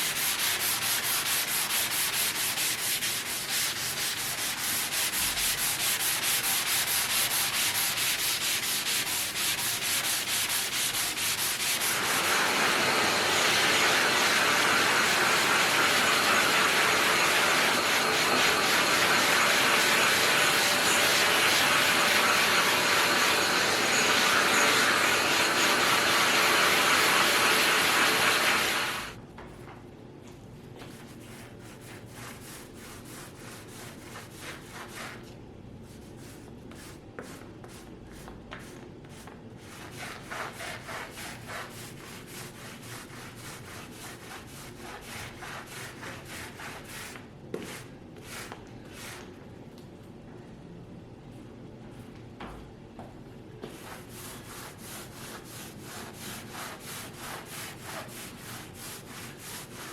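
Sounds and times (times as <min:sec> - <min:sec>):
sanding rasping strokes: 0:00.0 - 0:29.2, 0:39.7 - 0:47.8, 0:53.8 - 0:59.9.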